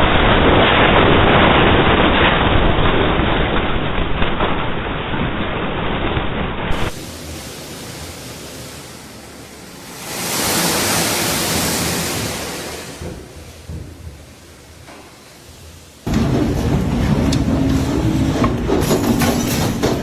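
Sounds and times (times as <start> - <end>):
wind and rain hiss: 0.0 - 16.1.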